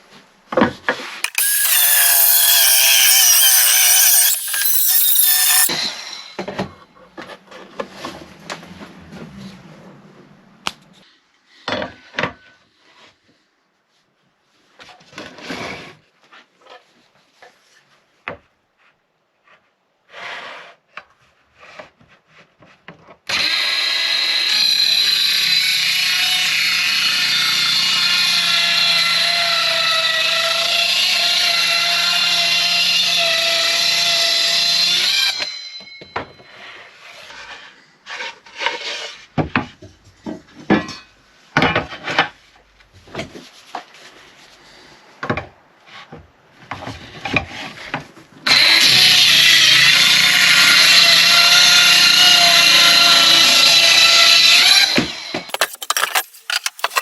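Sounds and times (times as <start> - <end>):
electric power tool running: 1.2 - 5.7
wood clattering: 55.5 - 57.0.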